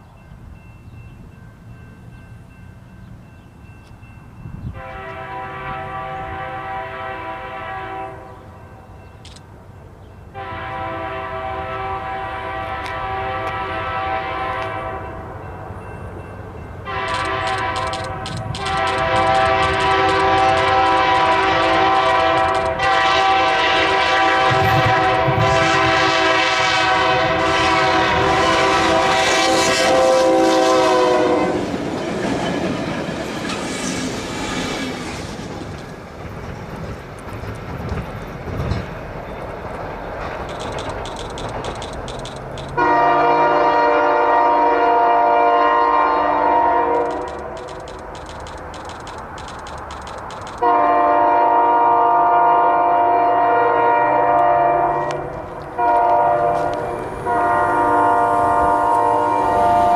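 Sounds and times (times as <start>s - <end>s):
locomotive air horn blasts: 4.7s - 8.5s, 10.3s - 15.3s, 16.9s - 31.7s, 42.8s - 47.3s, 50.6s - 59.9s
locomotives rumbling past: 16.4s - 43.2s
wheels clacking on rail joints: 16.9s - 23.0s, 31.6s - 42.9s, 46.9s - 50.8s.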